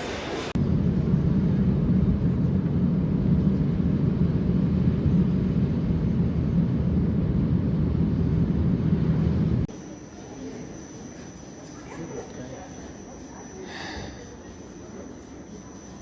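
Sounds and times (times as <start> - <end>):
car driving rumble: 0.0 - 9.7.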